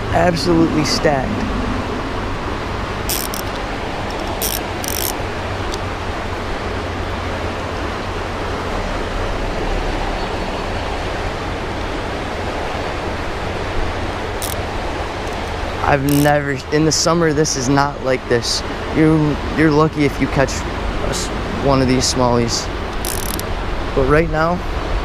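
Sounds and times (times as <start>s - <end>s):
creek water rushing: 1.8s - 17.1s
high-pitched bursts: 3.1s - 5.2s.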